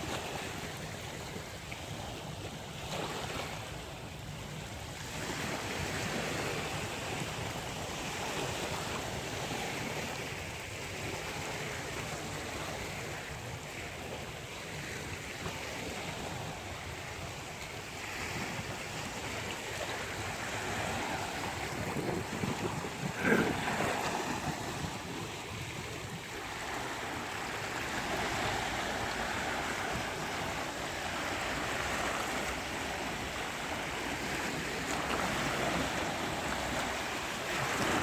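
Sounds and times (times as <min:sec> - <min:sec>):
surf breaking on beach: 0:18.2 - 0:38.0.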